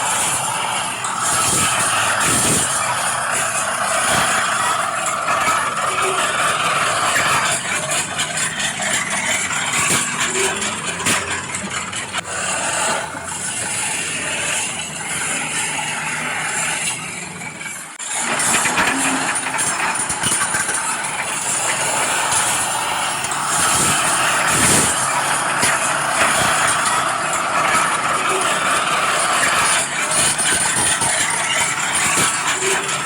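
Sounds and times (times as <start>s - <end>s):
model construction machines running: 0.0s - 33.0s.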